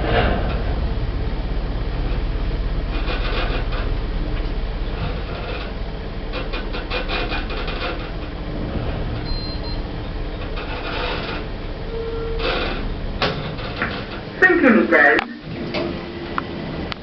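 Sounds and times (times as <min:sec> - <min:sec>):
lift car rattling: 0:00.0 - 0:17.0
brief lower tone: 0:09.2 - 0:09.9, 0:11.9 - 0:12.4.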